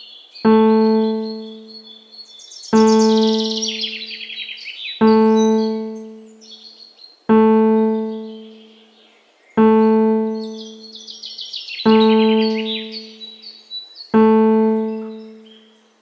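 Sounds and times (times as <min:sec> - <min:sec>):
small birds trilling: 0:00.0 - 0:16.0
low piano note: 0:00.5 - 0:01.8, 0:02.8 - 0:04.2, 0:05.0 - 0:06.4, 0:07.3 - 0:08.7, 0:09.6 - 0:11.0, 0:11.9 - 0:13.2, 0:14.2 - 0:15.6.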